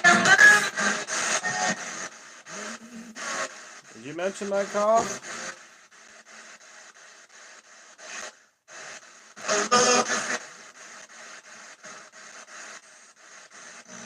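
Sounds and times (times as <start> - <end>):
radio static and clipped fragments: 0.2 - 5.8.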